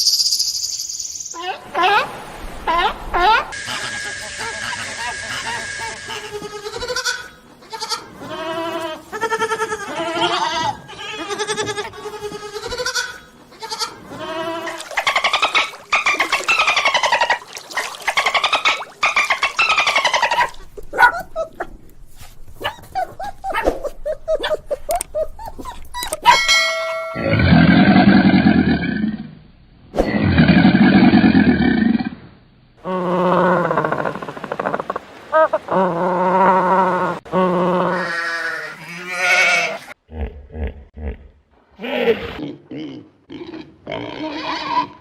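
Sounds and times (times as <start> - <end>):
animal bleating calls: 3.7 - 14.8, 37.7 - 40.0.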